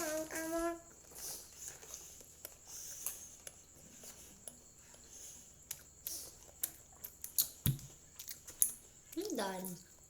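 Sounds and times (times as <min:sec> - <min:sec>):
soft rustling of snacks: 0:00.0 - 0:10.0.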